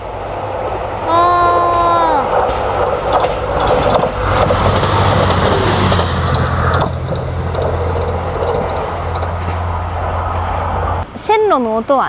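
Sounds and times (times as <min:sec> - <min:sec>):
train rushing past: 0:00.0 - 0:11.0
steady low drone: 0:02.5 - 0:11.0.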